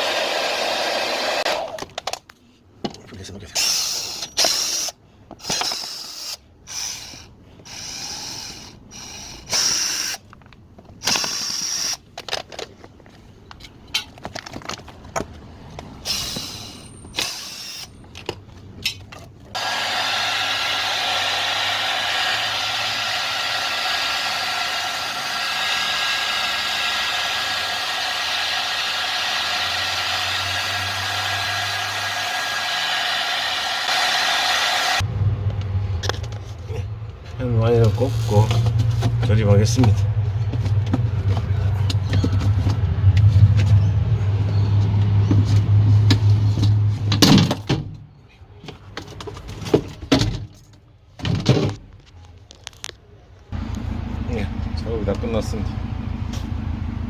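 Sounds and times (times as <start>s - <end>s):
hair dryer blowing: 0.0s - 1.8s, 19.6s - 35.0s.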